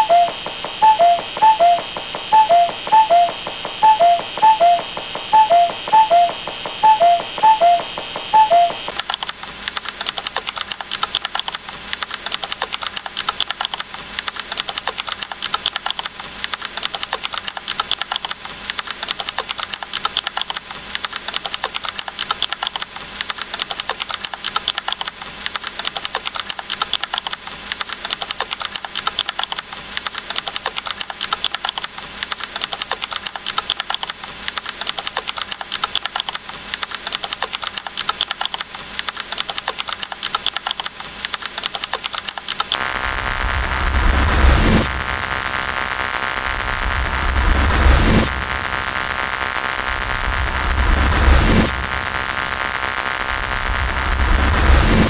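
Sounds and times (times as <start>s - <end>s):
faint high-pitched whine: 0.0s - 9.0s
rapid keyboard keystroke clicks: 0.0s - 42.8s.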